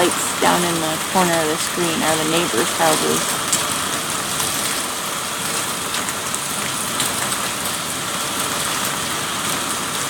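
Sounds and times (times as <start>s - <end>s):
heavy rain hissing: 0.0s - 5.9s.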